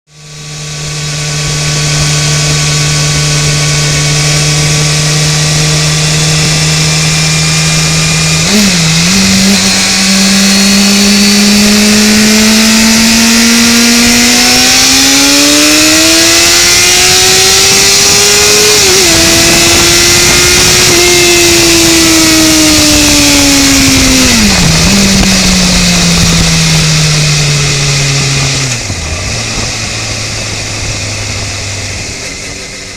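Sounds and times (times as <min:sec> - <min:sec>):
motorcycle engine revving: 0:00.1 - 0:32.9.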